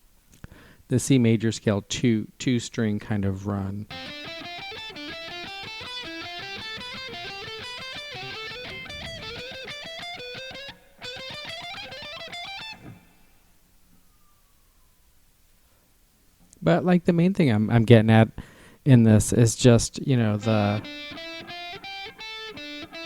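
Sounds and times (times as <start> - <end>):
guitar playing scale run: 3.9 - 13.1, 20.2 - 23.0.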